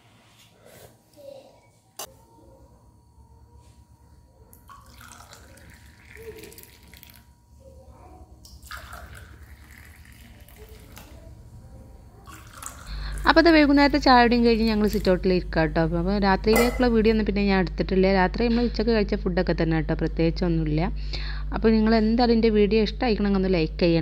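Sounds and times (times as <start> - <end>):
low hum: 12.9 - 24.0
kitchenware knocks: 16.5 - 17.0.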